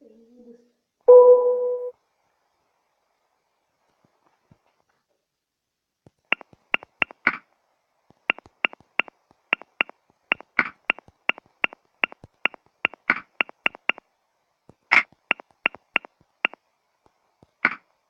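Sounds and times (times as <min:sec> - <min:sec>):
phone keyboard clicks: 0:06.3 - 0:07.3, 0:08.3 - 0:14.0, 0:14.9 - 0:16.2.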